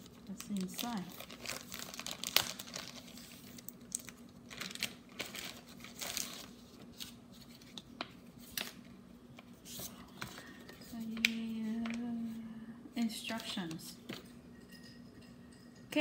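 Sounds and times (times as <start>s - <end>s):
packaging tearing: 0.0s - 7.2s
packaging crinkling and rustling: 0.0s - 12.0s.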